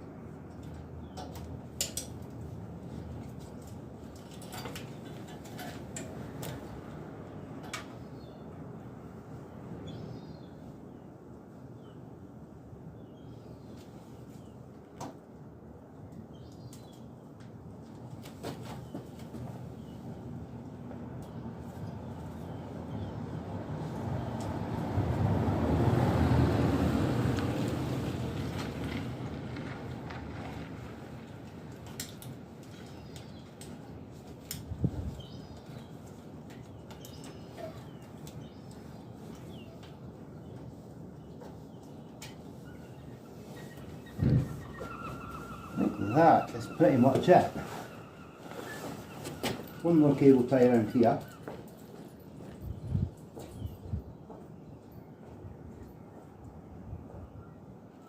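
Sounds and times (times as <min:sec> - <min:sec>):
low background noise: 0:00.0 - 0:58.0
light clicks and clatters: 0:00.4 - 0:06.8, 0:27.3 - 0:40.6
passing vehicle rumbling: 0:23.1 - 0:31.4, 0:44.0 - 0:51.2.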